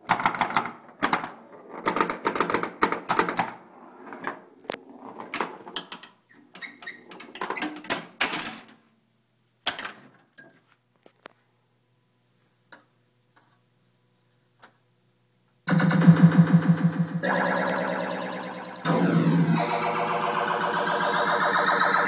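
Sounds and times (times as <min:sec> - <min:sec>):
pinball machine clattering: 0:15.7 - 0:22.0.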